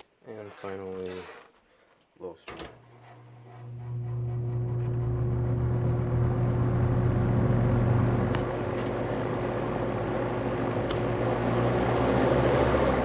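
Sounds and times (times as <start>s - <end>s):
electric fan motor humming: 3.4s - 13.0s.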